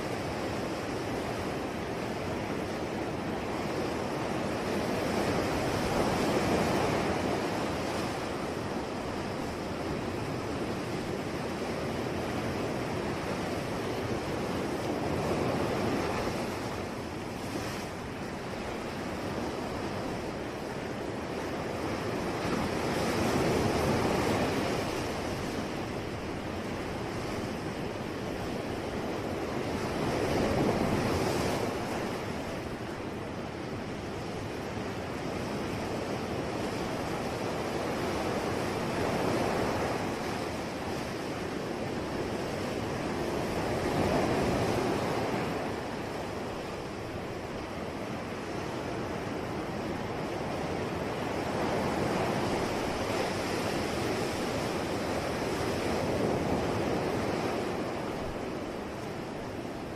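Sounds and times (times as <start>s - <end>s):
ocean waves breaking: 0.0s - 59.9s.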